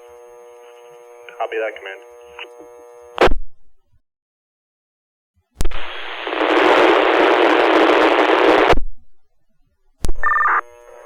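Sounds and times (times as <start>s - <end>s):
radio static hiss: 0.0s - 3.3s, 5.6s - 8.8s
radio click: 1.2s - 3.3s.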